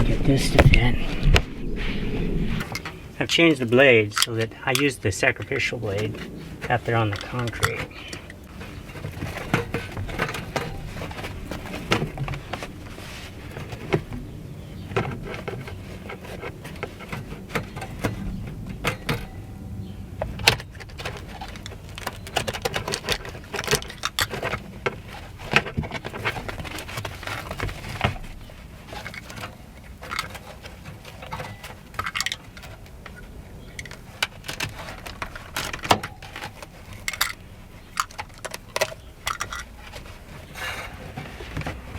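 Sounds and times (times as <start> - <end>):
steady low hum: 0.0 - 15.8
scrapes rustles and clicks: 0.0 - 41.9.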